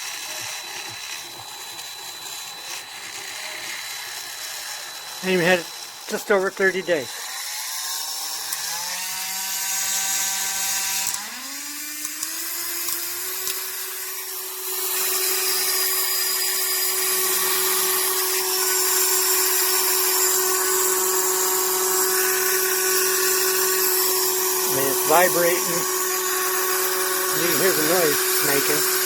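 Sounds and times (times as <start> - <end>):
rotary tool motor whine: 0.0 - 29.0
grinding vibrating noise: 20.8 - 29.0.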